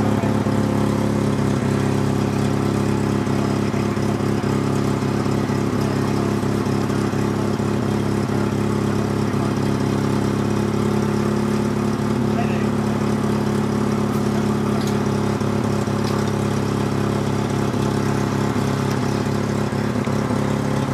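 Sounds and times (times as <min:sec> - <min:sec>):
vehicle engine idling: 0:00.0 - 0:20.9.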